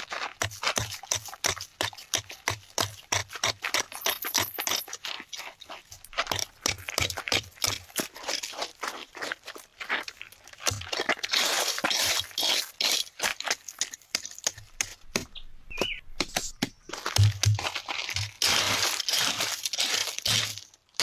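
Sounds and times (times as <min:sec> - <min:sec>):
brush crunching rustle: 0:08.3 - 0:21.0.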